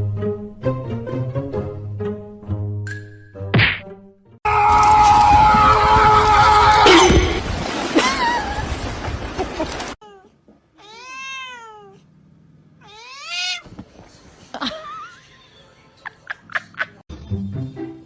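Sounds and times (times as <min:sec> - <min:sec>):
cat meowing: 0:10.0 - 0:12.0, 0:12.8 - 0:13.7.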